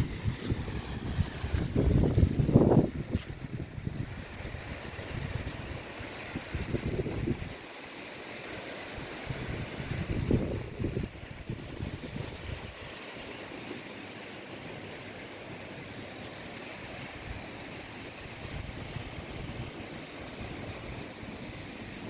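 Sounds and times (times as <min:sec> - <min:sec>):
wind buffeting microphone: 0:00.0 - 0:07.6, 0:09.0 - 0:12.9, 0:18.1 - 0:22.0
sea waves: 0:00.0 - 0:22.0
wind: 0:00.0 - 0:22.0.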